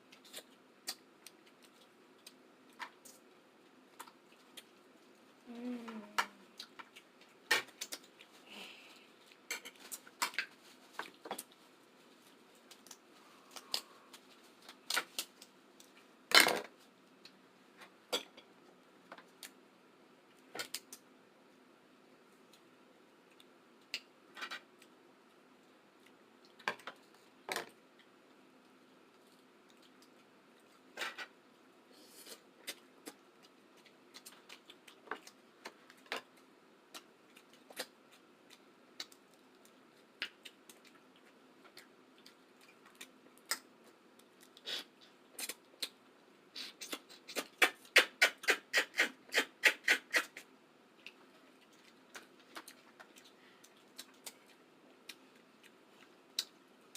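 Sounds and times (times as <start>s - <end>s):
food clicks and snaps: 0.1s - 3.3s, 3.9s - 4.8s, 6.2s - 8.3s, 9.2s - 11.6s, 12.6s - 16.0s, 20.3s - 21.1s, 23.3s - 25.0s, 32.6s - 44.6s, 45.3s - 46.0s, 46.8s - 56.6s.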